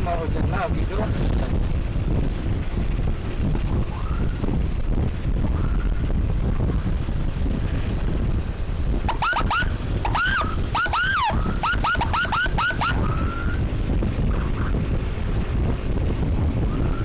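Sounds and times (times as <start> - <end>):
motorbike engine rumble: 0.0 - 17.0
wind rush: 0.0 - 17.0
siren chirps: 9.1 - 13.6.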